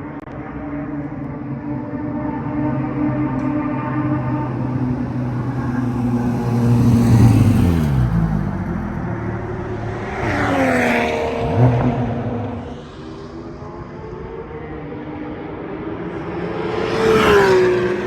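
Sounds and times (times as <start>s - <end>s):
car engine running hard: 0.0s - 18.0s
rush of noise: 4.4s - 16.9s.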